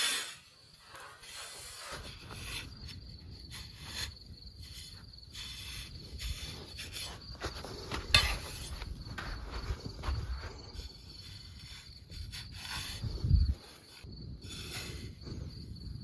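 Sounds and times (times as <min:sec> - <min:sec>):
crickets chirping: 0:00.0 - 0:16.0
crunching footsteps: 0:06.2 - 0:11.4.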